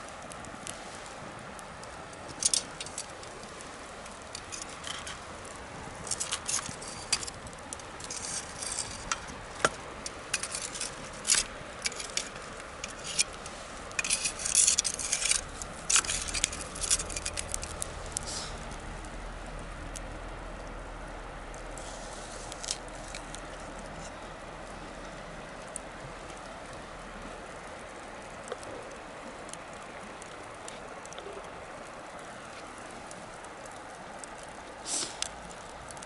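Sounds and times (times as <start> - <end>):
bonfire crackling and popping: 0.0 - 36.0.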